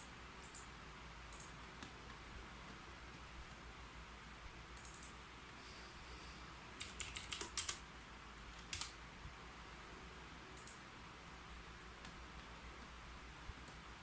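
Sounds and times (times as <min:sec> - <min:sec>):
keyboard keys typing: 0:04.8 - 0:05.2, 0:06.8 - 0:07.8, 0:08.5 - 0:09.0.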